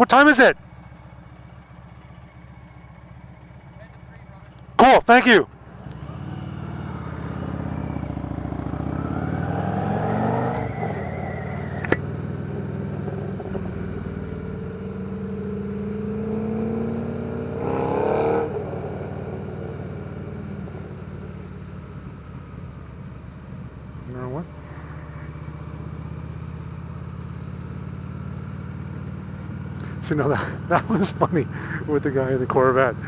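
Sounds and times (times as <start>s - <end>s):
motorcycle engine accelerating: 5.5s - 33.0s
sharp click: 11.8s - 12.0s.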